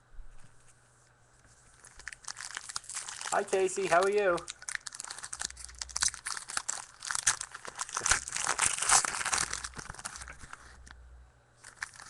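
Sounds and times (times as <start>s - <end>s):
card pack wrapper crinkling: 1.7s - 10.9s, 11.6s - 12.0s.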